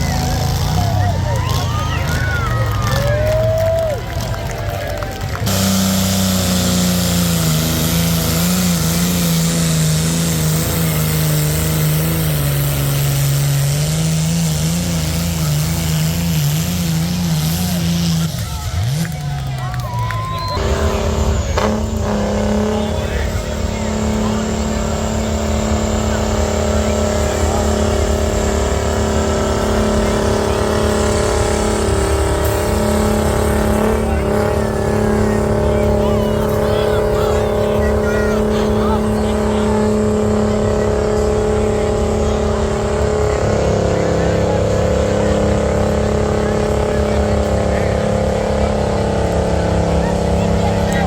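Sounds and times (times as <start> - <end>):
tractor engine running: 0.0 - 51.0.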